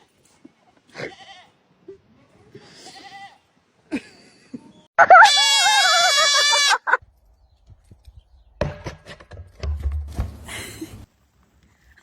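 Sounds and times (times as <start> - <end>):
goat bleating: 0.9 - 1.6, 2.7 - 3.4, 5.0 - 7.0.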